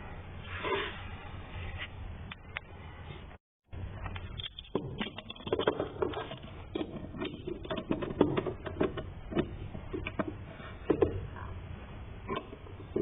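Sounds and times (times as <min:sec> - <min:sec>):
tools and parts clicking and knocking: 0:04.0 - 0:11.2.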